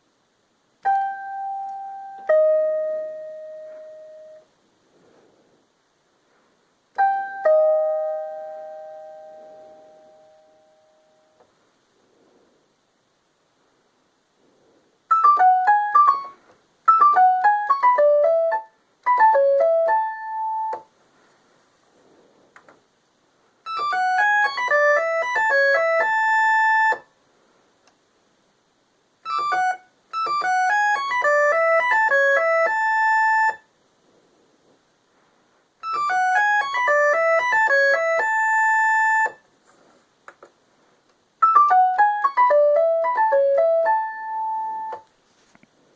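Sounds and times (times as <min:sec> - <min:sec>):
electronic keyboard ringtone melodies: 0:00.8 - 0:04.5, 0:07.0 - 0:11.4, 0:15.1 - 0:20.9, 0:23.7 - 0:27.1, 0:29.2 - 0:33.7, 0:35.8 - 0:39.4, 0:41.4 - 0:45.0.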